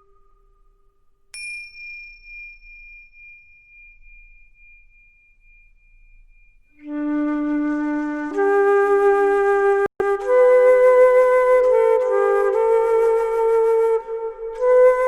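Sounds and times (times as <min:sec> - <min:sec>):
slow flute music: 0:00.0 - 0:01.2, 0:06.3 - 0:15.0
faint high steady tone: 0:00.0 - 0:06.9.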